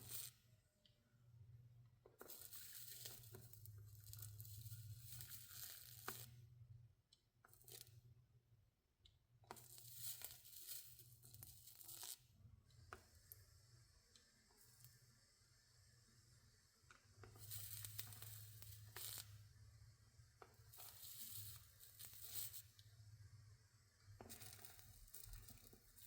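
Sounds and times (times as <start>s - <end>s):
flux sizzling and crackling: 0.0s - 0.3s, 2.2s - 6.4s, 17.4s - 19.4s, 20.5s - 22.8s, 24.0s - 26.0s.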